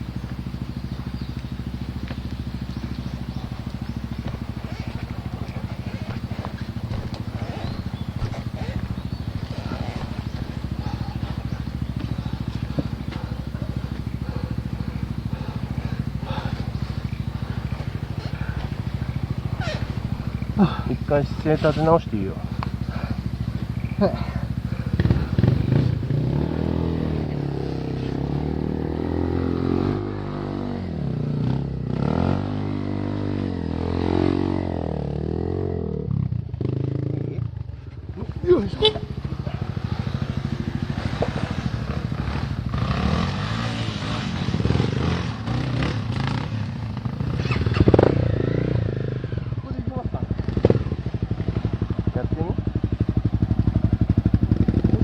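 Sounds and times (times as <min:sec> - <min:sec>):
motorbike engine idling: 0:00.0 - 0:32.0, 0:34.9 - 0:55.0.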